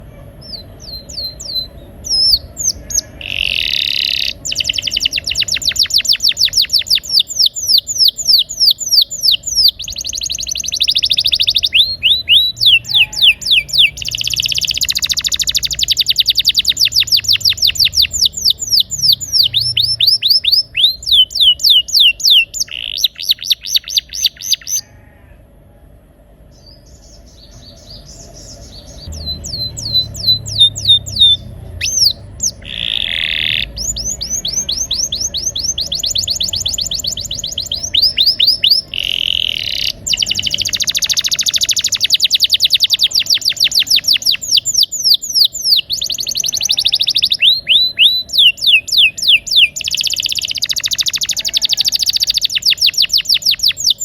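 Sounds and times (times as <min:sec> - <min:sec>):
canary singing trills: 0:00.0 - 0:25.0, 0:26.4 - 0:54.0.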